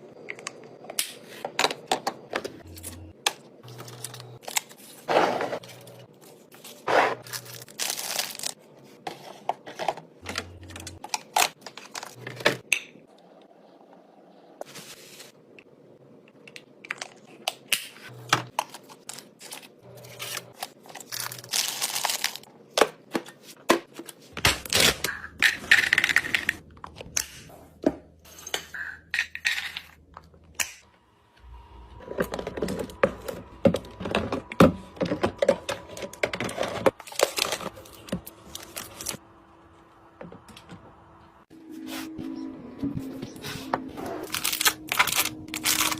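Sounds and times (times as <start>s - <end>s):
packaging crinkling and tearing: 7.2s - 8.6s, 18.6s - 22.5s, 36.0s - 39.2s, 44.2s - 45.9s.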